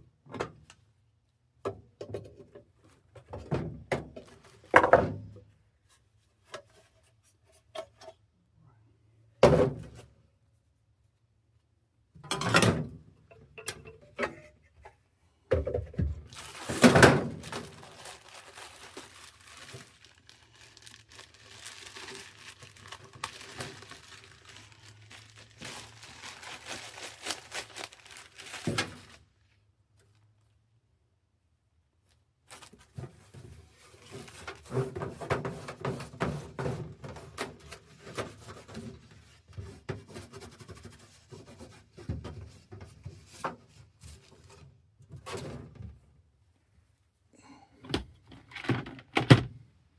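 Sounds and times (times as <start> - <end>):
rustling and crinkling: 4.1 - 7.7, 15.9 - 30.7, 32.0 - 45.9.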